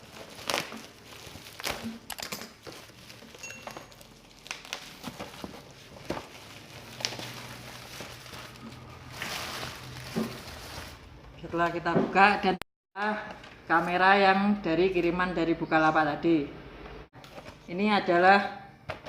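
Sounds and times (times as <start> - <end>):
packaging rustling and crinkling: 0.0 - 11.2.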